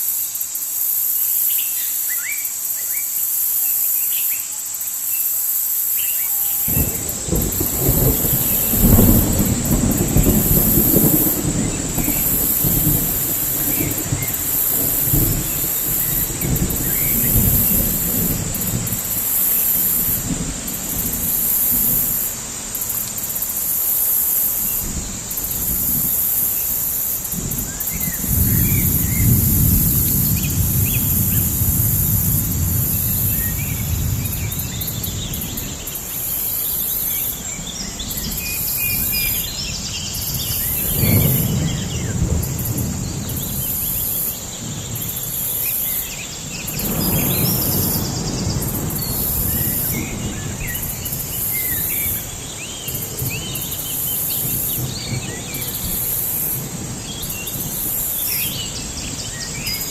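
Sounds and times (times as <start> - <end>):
steady high insect drone: 0.0 - 59.9
low rolling rumble: 6.7 - 22.9.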